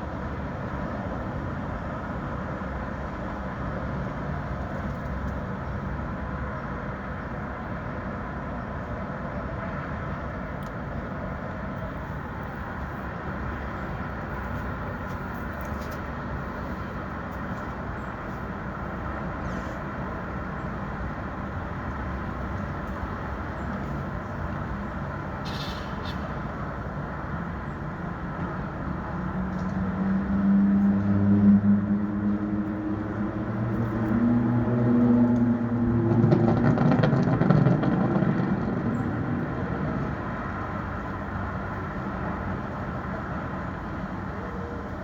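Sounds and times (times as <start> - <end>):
passing cars: 0.0 - 45.0
heavy vehicle engine: 18.5 - 45.0.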